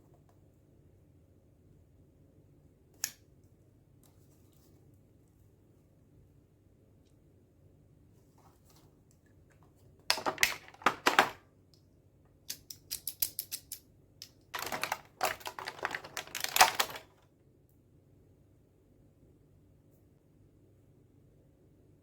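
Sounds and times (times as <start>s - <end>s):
plastic pieces clicking and rattling: 10.1s - 11.4s, 12.5s - 17.2s.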